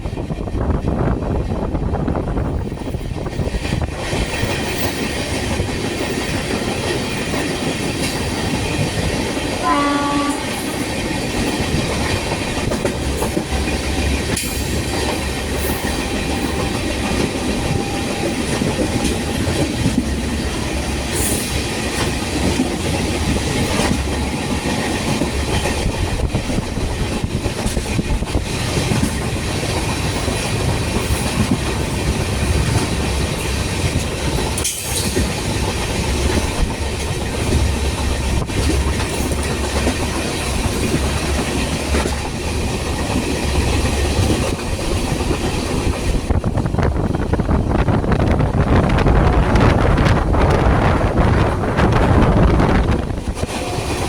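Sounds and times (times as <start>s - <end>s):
train wheels on rails: 0.0s - 54.0s
train horn blast: 9.6s - 10.8s.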